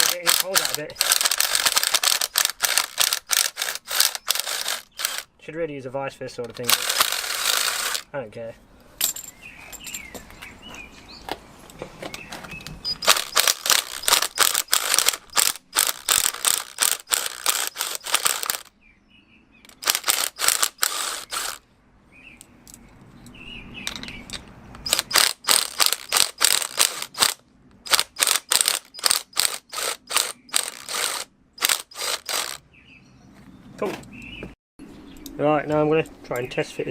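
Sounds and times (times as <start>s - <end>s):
drill chattering in metal: 0.0s - 5.3s, 6.6s - 8.0s, 13.0s - 18.7s, 19.7s - 21.6s, 24.8s - 32.6s.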